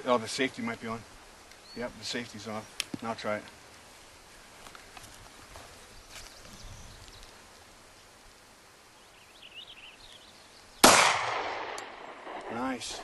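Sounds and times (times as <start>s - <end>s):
loud gunshot with echo: 10.8s - 13.0s.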